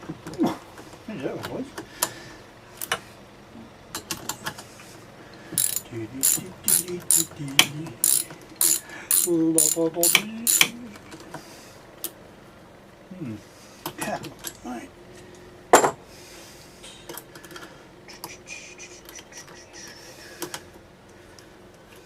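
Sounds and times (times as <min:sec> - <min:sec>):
socket wrench ratchet clicking: 0:05.6 - 0:07.3, 0:08.0 - 0:10.7.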